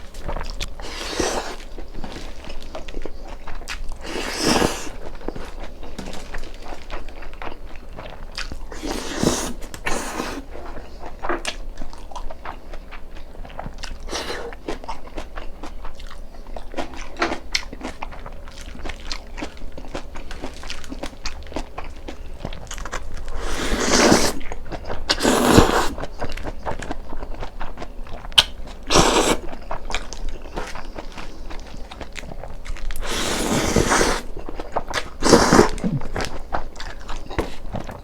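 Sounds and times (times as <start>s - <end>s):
wet chewing: 0.0s - 38.0s
noodle slurps: 0.8s - 1.7s, 4.0s - 5.6s, 8.7s - 10.6s, 14.0s - 14.6s, 23.3s - 24.5s, 25.1s - 26.1s, 28.7s - 29.8s, 33.0s - 36.6s.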